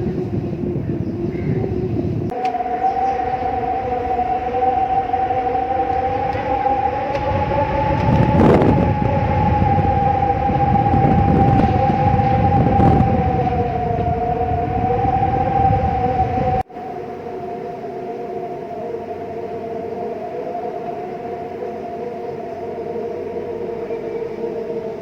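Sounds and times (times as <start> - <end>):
low rumble: 0.0 - 17.3
eerie howling wind: 0.0 - 25.0.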